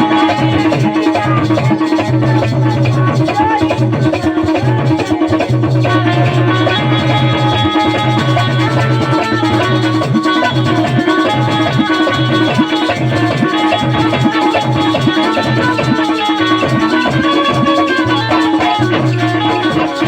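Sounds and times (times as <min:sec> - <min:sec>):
drums and rattling percussion: 0:00.0 - 0:20.0
held melodic notes: 0:00.0 - 0:20.0
pulsing bass line: 0:00.0 - 0:20.0.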